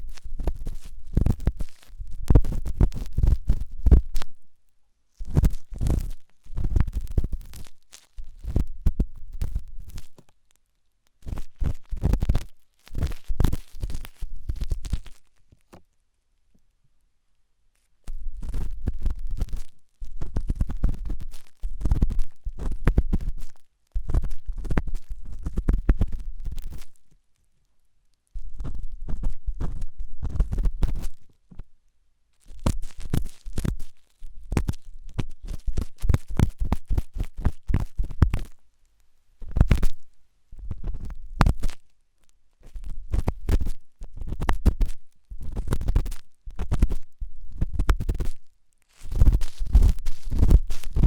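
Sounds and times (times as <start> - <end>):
ear pick scratching in ear: 0.0 - 4.3, 11.2 - 15.2, 32.5 - 38.5, 42.6 - 51.0.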